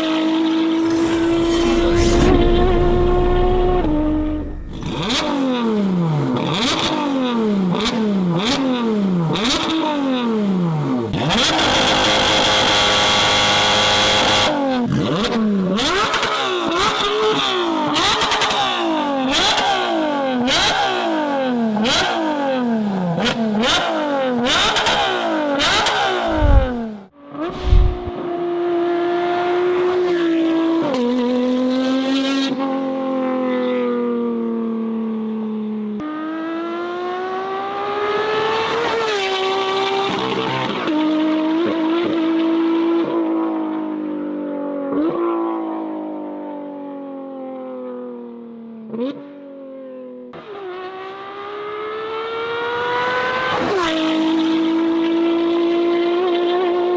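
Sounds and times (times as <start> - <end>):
car engine revving: 0.7 - 8.5, 26.0 - 28.2
loud low thumps: 1.1 - 5.6, 26.3 - 26.8, 27.5 - 28.2.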